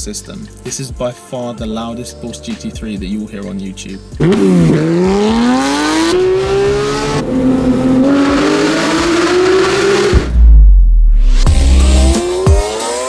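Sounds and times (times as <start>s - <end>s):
car engine accelerating hard: 4.2s - 13.0s.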